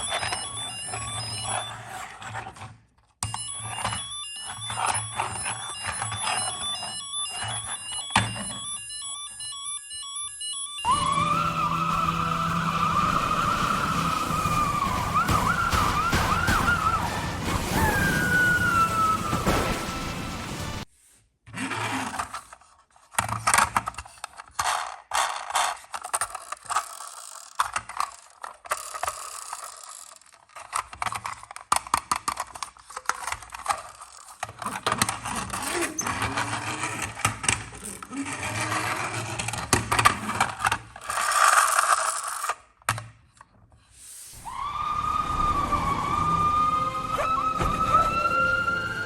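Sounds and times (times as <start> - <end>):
toy vehicles clicking and rattling: 0.0 - 20.1, 21.6 - 43.8
toy electronic siren: 0.0 - 20.8, 25.4 - 30.7, 44.4 - 49.0
ratchet-like clicks: 24.6 - 31.5.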